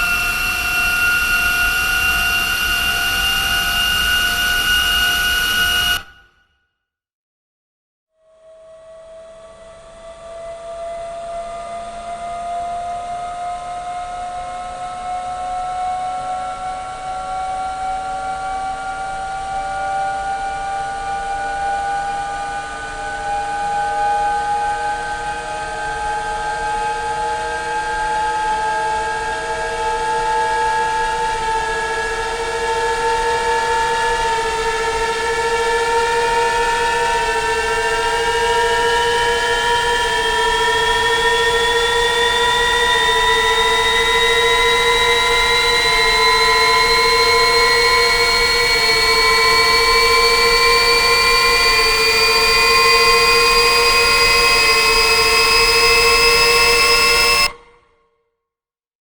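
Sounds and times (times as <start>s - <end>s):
whistle-like rising chord: 0.0s - 6.3s, 25.8s - 58.0s.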